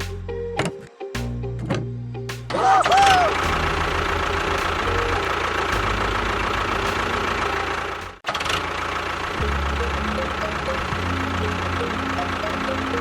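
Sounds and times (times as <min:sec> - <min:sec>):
small motor droning: 0:03.0 - 0:13.0.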